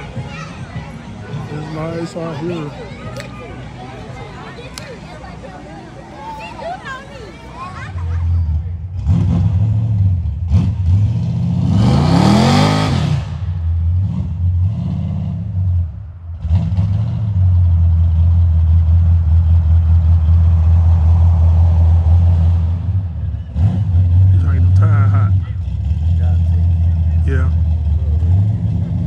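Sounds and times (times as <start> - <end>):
car engine revving hard: 9.0 - 15.7, 20.1 - 29.0.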